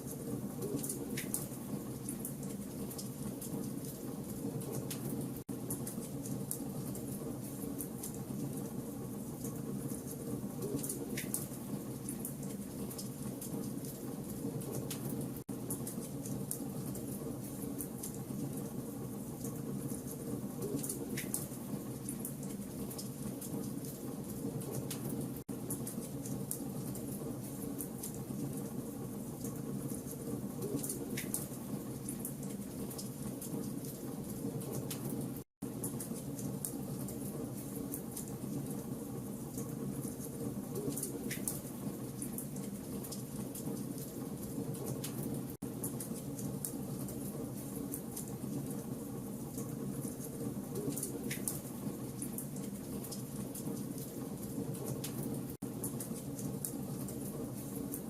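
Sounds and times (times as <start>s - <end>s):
wood fire crackling and popping: 9.4s - 18.6s, 19.4s - 28.7s, 29.4s - 38.8s, 39.5s - 58.0s.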